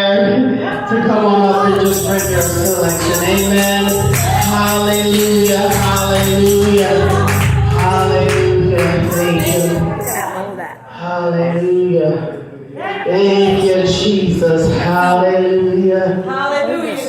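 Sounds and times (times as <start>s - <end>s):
group singing gospel: 0.9s - 10.7s
instrumental backing: 1.6s - 10.6s
tambourine shaking: 1.7s - 10.5s.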